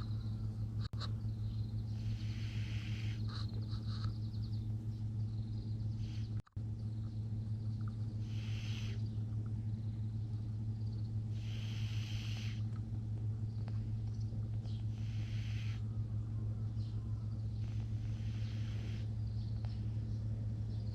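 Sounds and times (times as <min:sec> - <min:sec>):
steady low hum: 0:00.0 - 0:20.9
cat snoring: 0:02.0 - 0:03.3, 0:08.2 - 0:09.0, 0:11.4 - 0:12.6, 0:14.9 - 0:15.8, 0:17.6 - 0:19.0.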